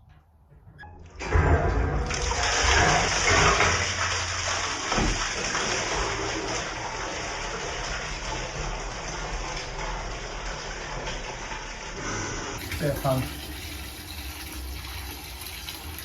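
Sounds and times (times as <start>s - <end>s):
water gushing and splashing: 1.9s - 12.0s, 12.6s - 16.0s.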